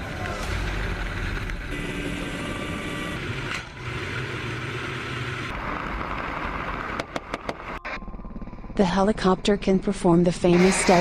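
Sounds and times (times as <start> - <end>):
helicopter engine and rotor: 7.8 - 9.3.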